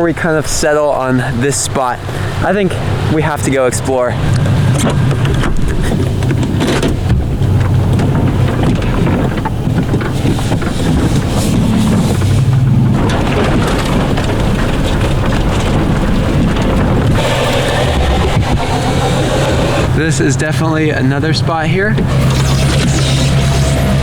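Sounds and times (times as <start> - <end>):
engine low rumble: 0.0 - 24.0
tyres crackling over snow and rocks: 7.3 - 20.8.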